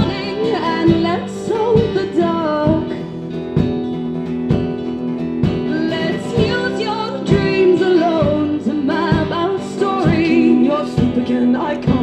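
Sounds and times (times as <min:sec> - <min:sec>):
women singing: 0:00.0 - 0:03.0, 0:05.6 - 0:12.0
acoustic guitar strumming: 0:00.0 - 0:12.0.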